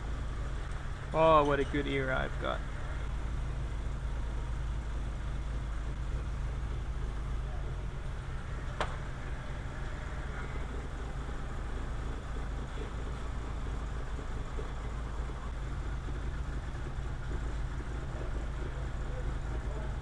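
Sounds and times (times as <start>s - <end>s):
car engine running: 0.0s - 20.0s.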